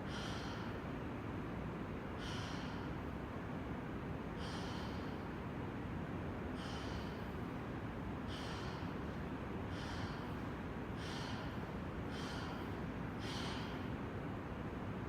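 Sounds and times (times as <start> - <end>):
person breathing sharply: 0.0 - 0.8, 2.2 - 3.1, 4.4 - 5.3, 6.6 - 7.5, 8.2 - 14.0.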